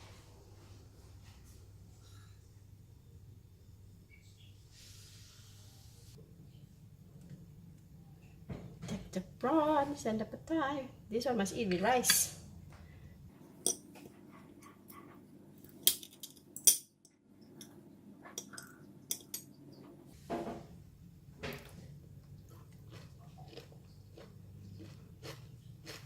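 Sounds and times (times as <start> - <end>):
spoon clinking on plate: 18.4 - 19.5.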